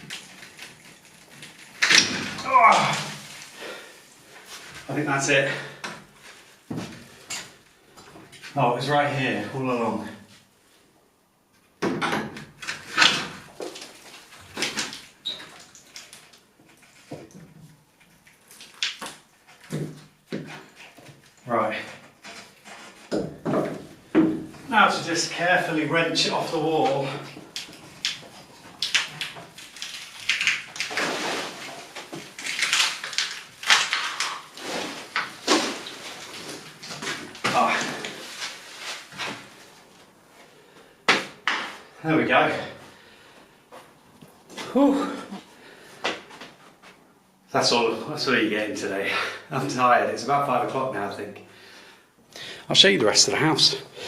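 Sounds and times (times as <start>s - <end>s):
wood creaking and scraping: 0.0s - 8.5s, 12.1s - 40.8s.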